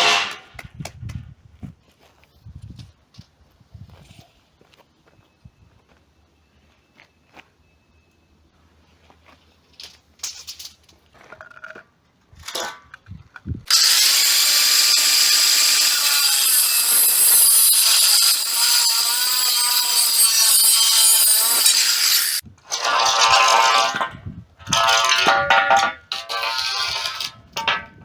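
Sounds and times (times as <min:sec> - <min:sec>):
power tool grinding metal: 0:13.7 - 0:22.4.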